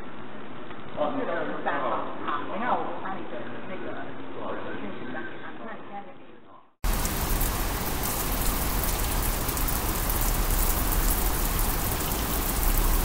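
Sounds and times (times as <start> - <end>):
water spraying from burst pipe: 6.8 - 13.0.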